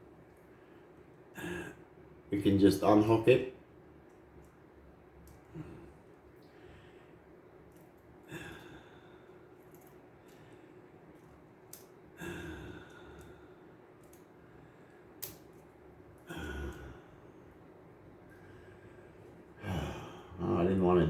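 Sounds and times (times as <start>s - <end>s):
small parts clicking: 9.6s - 10.5s, 11.1s - 11.9s, 14.0s - 14.3s, 15.2s - 15.7s.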